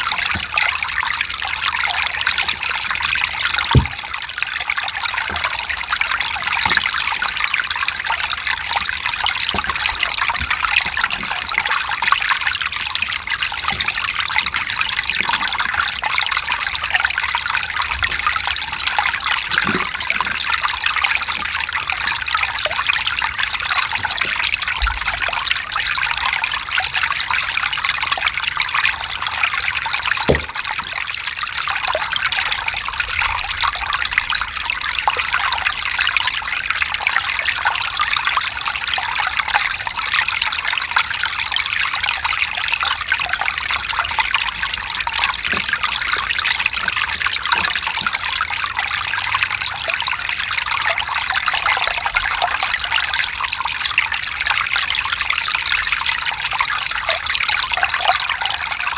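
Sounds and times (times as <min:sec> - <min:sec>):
faint low water plops: 0:00.0 - 0:27.2, 0:28.6 - 0:35.8, 0:42.4 - 0:53.2
stream trickling over rocks: 0:00.0 - 0:58.9.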